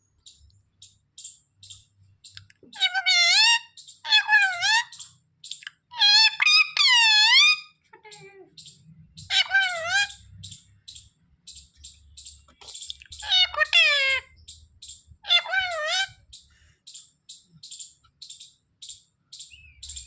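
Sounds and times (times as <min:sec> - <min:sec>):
parrot high chirps: 0:00.3 - 0:20.0
parrot calling: 0:02.7 - 0:20.0.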